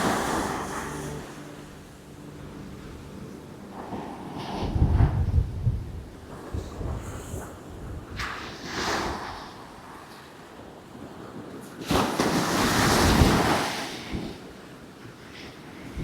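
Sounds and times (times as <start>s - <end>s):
wind buffeting microphone: 0.0s - 10.1s
heavy surf breaking: 0.0s - 10.3s.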